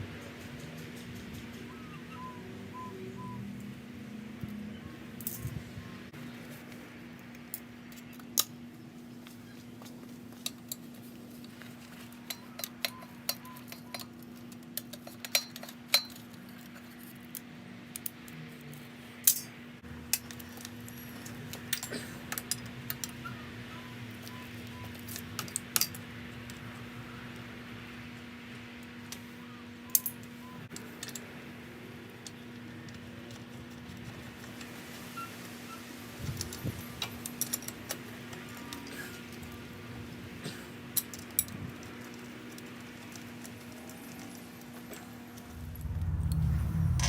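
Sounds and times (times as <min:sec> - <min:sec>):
steady low hum: 0:44.3 - 0:47.0.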